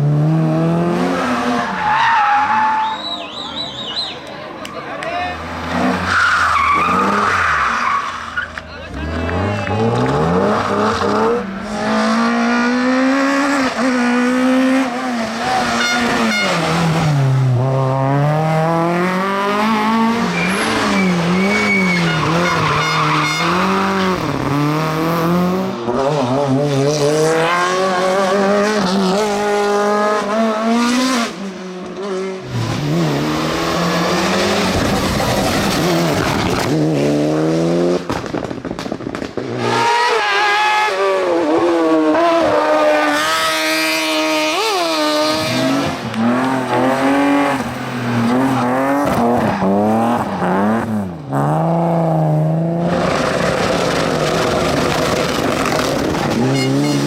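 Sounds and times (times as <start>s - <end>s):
tyre squeal: 1.6s - 4.2s, 6.0s - 8.6s, 20.2s - 23.8s
race car engine revving: 5.3s - 57.0s.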